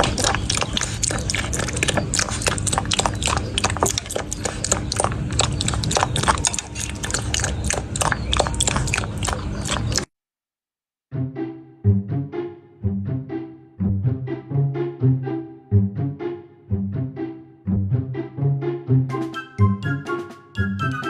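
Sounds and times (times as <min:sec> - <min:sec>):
dog chewing noisily: 0:00.0 - 0:10.1.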